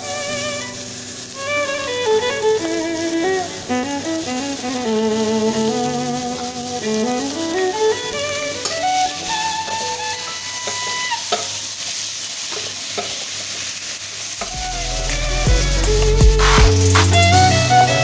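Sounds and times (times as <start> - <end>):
meat sizzling in a pot: 0.0 - 18.0
background music: 14.5 - 18.0
bass line: 14.5 - 18.0.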